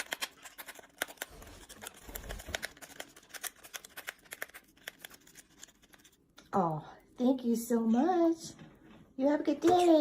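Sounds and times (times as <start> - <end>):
wrapper crinkling and clicking: 0.0 - 6.2.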